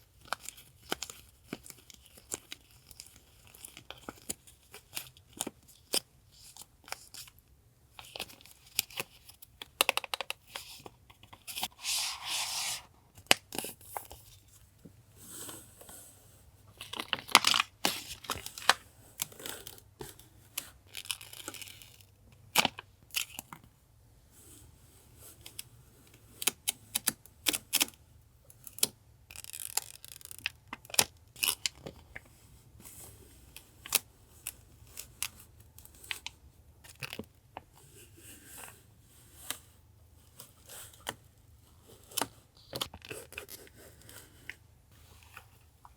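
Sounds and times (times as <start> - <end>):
paper tearing: 11.8 - 12.9.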